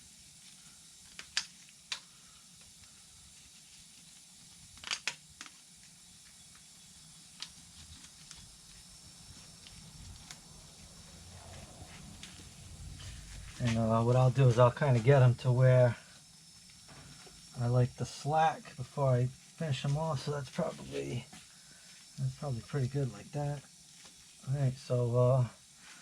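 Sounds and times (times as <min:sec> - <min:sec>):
plastic netting clicks: 0:04.8 - 0:05.5.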